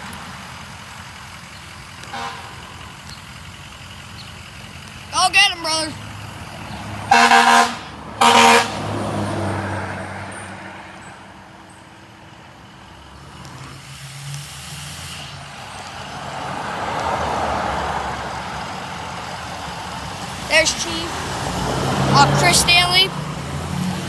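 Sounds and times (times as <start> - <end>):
truck engine running: 0.0 - 24.0
fire engine horn blasts: 2.0 - 2.9, 7.0 - 9.3, 20.5 - 23.2.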